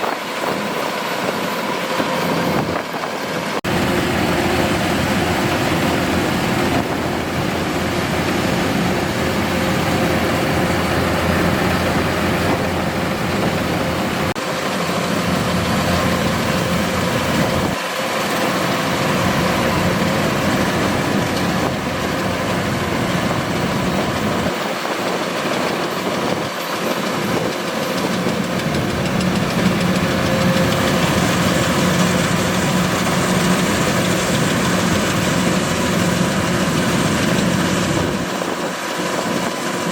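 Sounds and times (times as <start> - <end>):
combine harvester running: 0.0 - 39.9.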